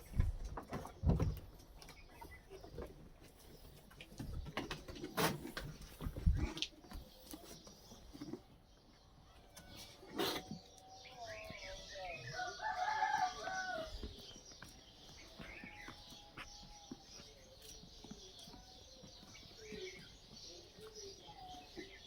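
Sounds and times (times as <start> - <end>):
rooster crowing: 12.3 - 14.0.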